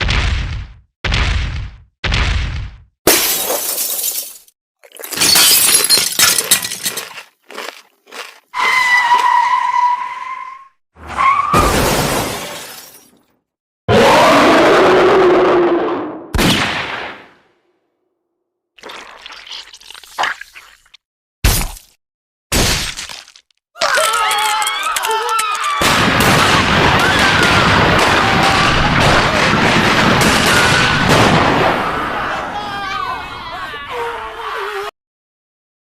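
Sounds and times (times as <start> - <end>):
crash of breaking glass: 3.1 - 7.0, 11.5 - 13.2.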